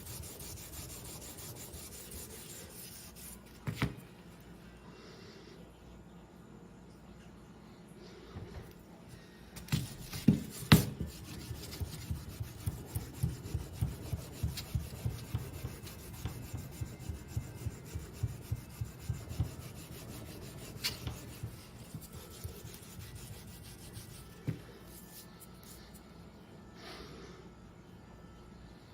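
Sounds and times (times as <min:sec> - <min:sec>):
rubber block scrubbing metal: 0:00.0 - 0:03.3, 0:10.1 - 0:24.4.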